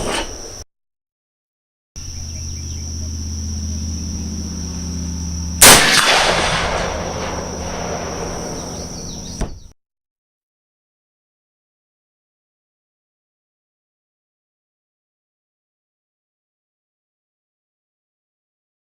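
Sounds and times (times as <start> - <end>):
rifle shot with echo: 5.6 - 9.4.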